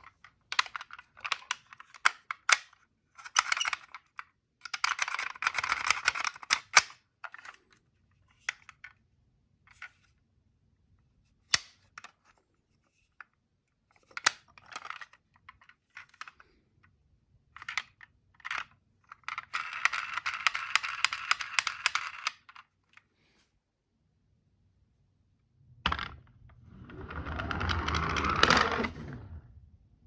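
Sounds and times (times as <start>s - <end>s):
toy cars clicking and scraping: 17.6s - 22.7s, 25.8s - 29.6s
toy car rolling and rattling: 18.5s - 22.6s, 25.7s - 29.6s.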